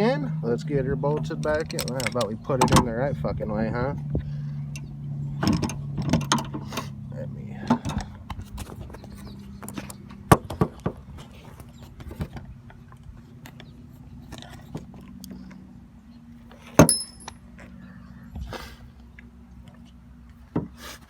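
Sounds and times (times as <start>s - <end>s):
metallic clinks of hand tools: 16.8s - 17.4s.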